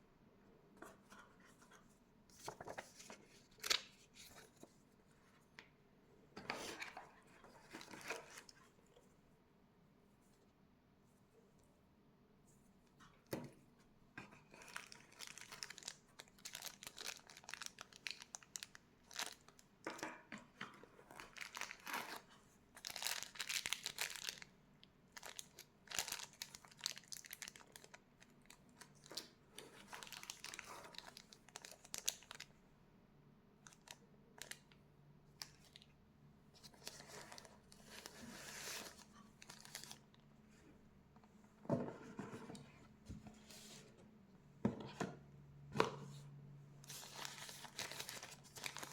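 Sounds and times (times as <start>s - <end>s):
packaging crinkling and tearing: 14.5s - 19.6s, 21.2s - 22.2s, 22.8s - 24.5s, 25.2s - 28.6s, 36.7s - 40.0s, 46.9s - 48.9s.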